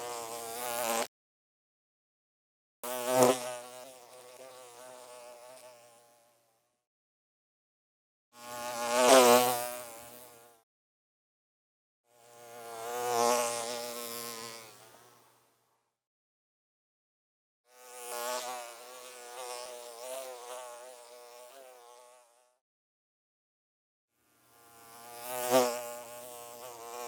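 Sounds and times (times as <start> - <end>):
bee buzzing in flight: 0.0 - 1.1, 2.9 - 6.4, 8.4 - 10.6, 12.3 - 15.4, 17.7 - 22.6, 24.5 - 27.0.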